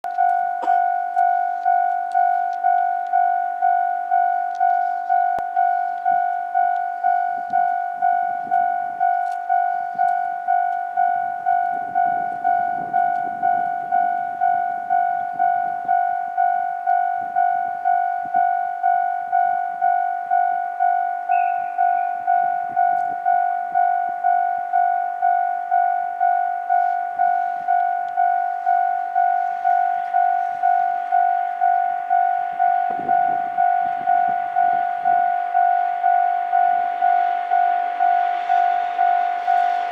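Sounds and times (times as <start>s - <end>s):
approaching train: 0.0s - 39.9s
level-crossing warning bell ringing: 0.0s - 39.9s.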